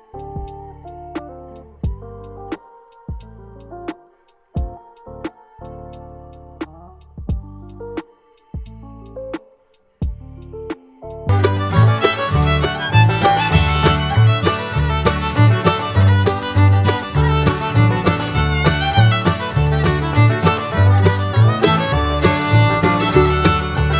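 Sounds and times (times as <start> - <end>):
fiddle: 11.3 - 23.9
steady bass beat: 11.3 - 23.9.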